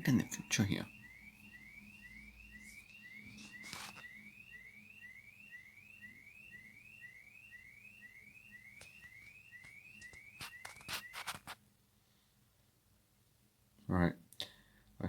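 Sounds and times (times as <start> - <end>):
car alarm whooping chirp: 0.0 - 11.4.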